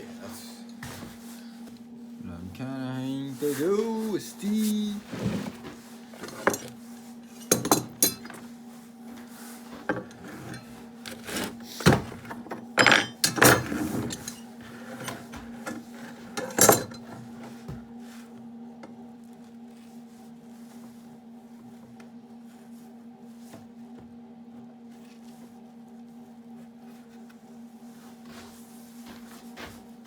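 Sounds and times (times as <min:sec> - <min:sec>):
steady low hum: 0:00.0 - 0:19.2
metal tools clinking and knocking: 0:06.2 - 0:06.7, 0:07.4 - 0:08.4, 0:12.6 - 0:14.5, 0:16.3 - 0:17.1.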